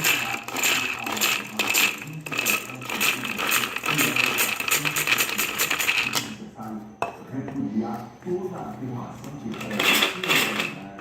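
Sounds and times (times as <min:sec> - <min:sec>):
small metal parts rattling: 0:00.0 - 0:06.4, 0:09.5 - 0:11.0.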